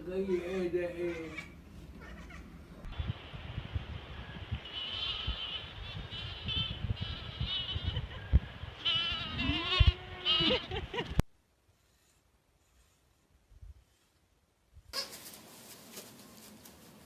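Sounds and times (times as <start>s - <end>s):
animal bleating calls: 0.2s - 2.5s, 4.7s - 10.8s
low drawn-out animal call: 4.6s - 10.6s.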